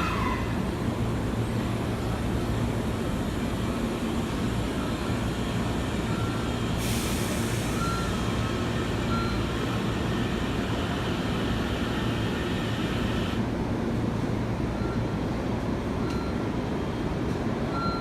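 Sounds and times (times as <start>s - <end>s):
train rumbling: 0.0s - 14.6s
hiss: 6.8s - 7.8s.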